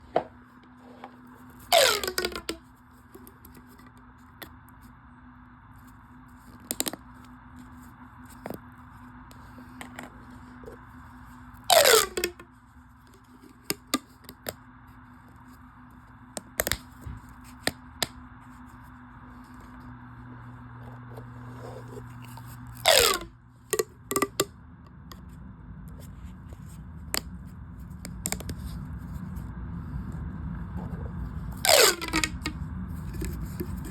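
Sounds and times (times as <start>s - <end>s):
steady low hum: 0.0s - 33.9s
plastic tube rasping pulls: 1.6s - 2.6s, 11.7s - 12.4s, 22.8s - 24.5s, 31.6s - 33.9s.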